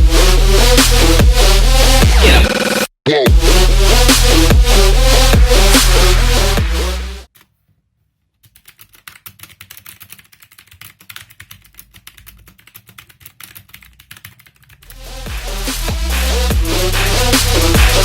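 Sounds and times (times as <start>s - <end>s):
electronic music: 0.0s - 7.3s, 14.9s - 18.0s
mechanical keyboard typing: 8.4s - 15.0s.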